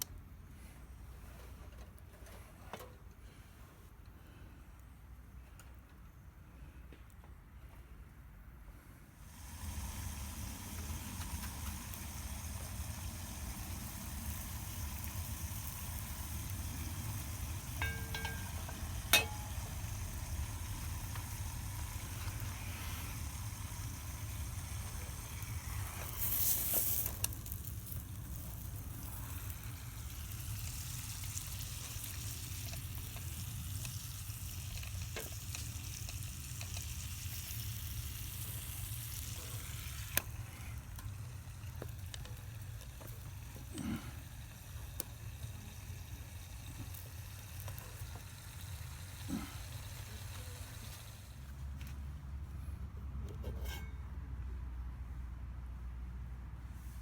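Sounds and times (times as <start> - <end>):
food sizzling in a pan: 9.2 - 51.4.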